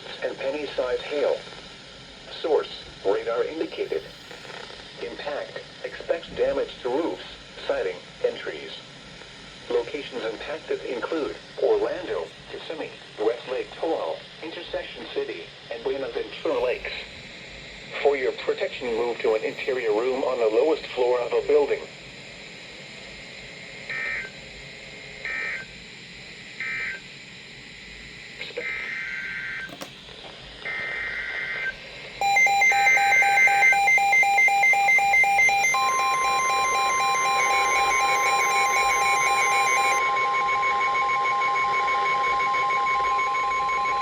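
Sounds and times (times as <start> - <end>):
fast-pulsing electronic alarm beep: 25.1 - 25.8, 26.6 - 27.7, 30.7 - 44.0
steady single-pitch alert tone: 32.2 - 44.0.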